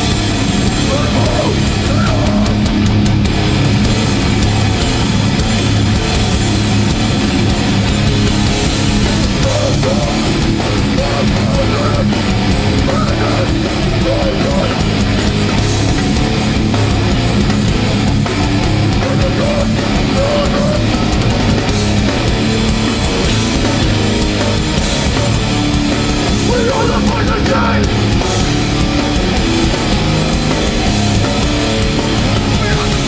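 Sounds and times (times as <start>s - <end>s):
live hardcore band playing: 0.0s - 33.0s.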